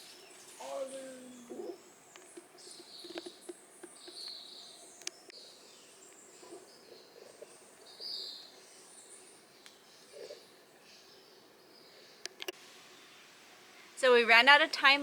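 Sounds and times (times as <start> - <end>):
steady hiss: 12.0 - 15.0.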